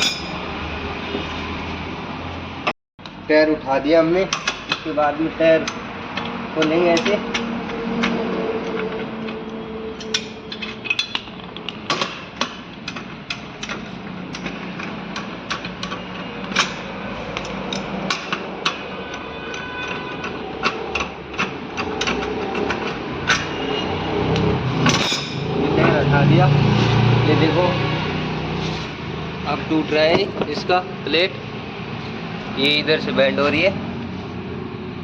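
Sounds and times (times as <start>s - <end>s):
socket wrench clicking on wheel nuts: 5.6s - 23.5s.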